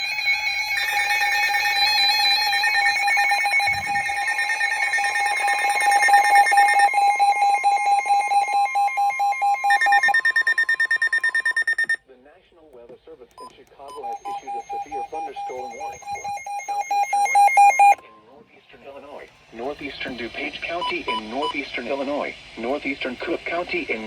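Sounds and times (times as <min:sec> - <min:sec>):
electronic alarm tones and beeps: 0:00.0 - 0:12.0, 0:13.9 - 0:18.0.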